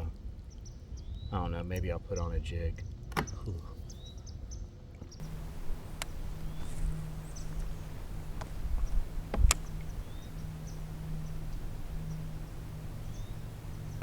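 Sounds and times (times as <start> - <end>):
high bird chirps: 5.2 - 14.0
steady low hum: 5.2 - 14.0.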